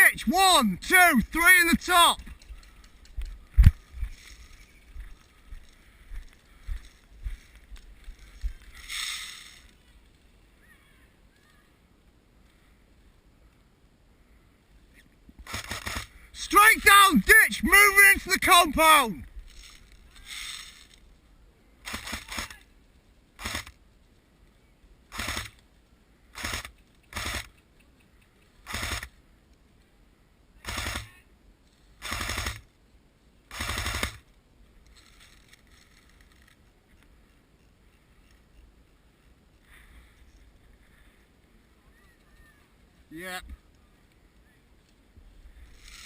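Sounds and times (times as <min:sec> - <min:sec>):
airsoft guns firing bursts: 0:15.4 - 0:16.1, 0:21.8 - 0:22.6, 0:25.1 - 0:25.6, 0:26.4 - 0:27.5, 0:28.7 - 0:29.2, 0:30.6 - 0:31.1, 0:32.0 - 0:32.6, 0:33.5 - 0:34.2.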